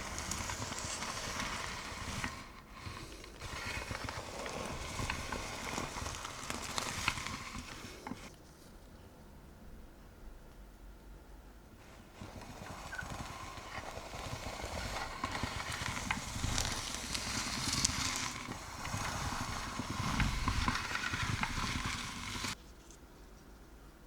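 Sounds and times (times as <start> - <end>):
bread knife sawing crusty loaf: 0.0 - 8.3, 11.9 - 22.6
crust crackling and crunching: 0.0 - 8.4, 11.9 - 22.6.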